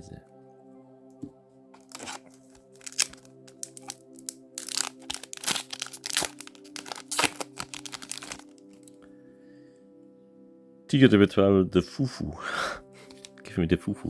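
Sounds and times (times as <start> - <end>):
soft background music: 0.0 - 14.0
foil wrapper crinkling and tearing: 1.8 - 9.0, 13.0 - 13.4.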